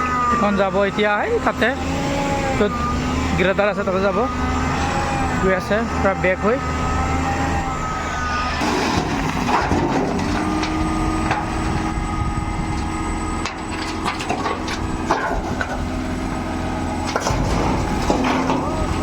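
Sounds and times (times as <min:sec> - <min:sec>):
excavator engine running: 0:00.0 - 0:19.0
sharp knocks and cracks: 0:17.1 - 0:18.8.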